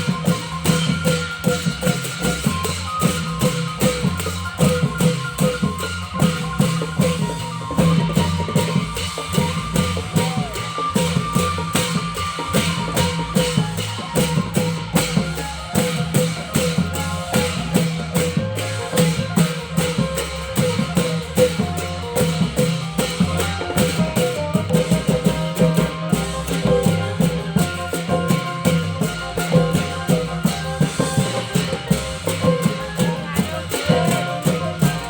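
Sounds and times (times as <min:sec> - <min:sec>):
drum ensemble playing: 0:00.0 - 0:35.0
percussion: 0:00.0 - 0:35.0.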